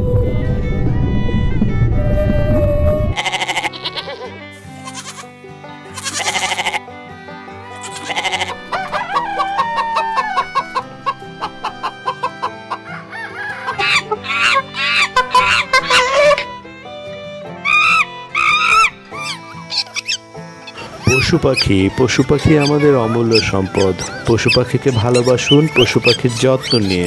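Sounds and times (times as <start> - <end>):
background music: 0.0 - 27.0
hens clucking: 6.0 - 27.0
rooster crowing: 8.1 - 16.3.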